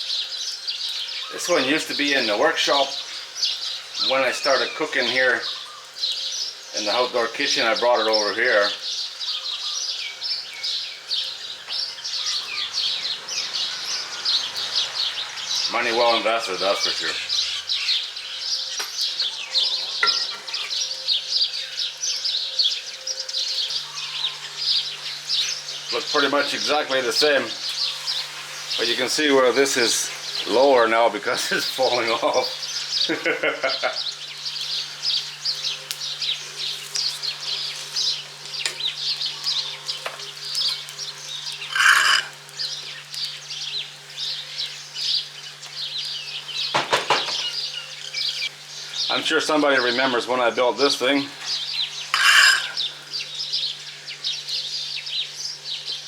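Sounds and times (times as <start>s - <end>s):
small birds chirping: 0.0s - 56.0s
steady low hum: 20.6s - 56.0s.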